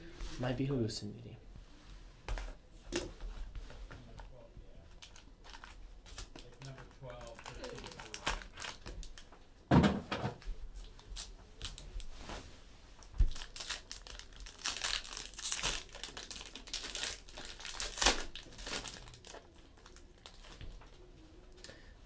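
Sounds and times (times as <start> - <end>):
plastic wrapping crinkling and tearing: 4.9 - 9.3, 10.8 - 12.1, 13.0 - 21.0.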